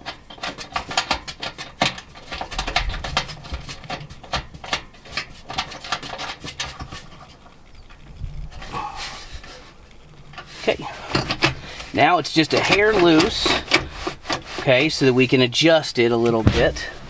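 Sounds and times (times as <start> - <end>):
metal clicking and rattling: 0.0 - 8.0, 10.3 - 15.0
dull thumps: 16.2 - 17.0.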